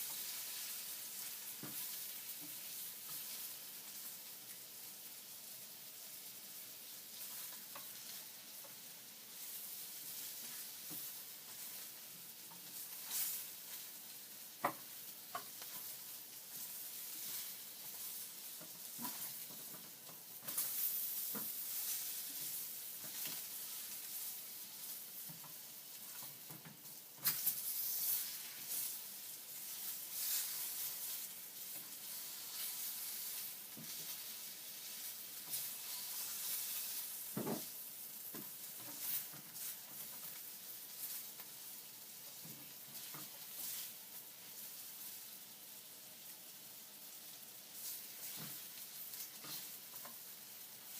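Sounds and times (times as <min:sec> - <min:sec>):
bacon sizzling in a pan: 0:00.0 - 0:50.9.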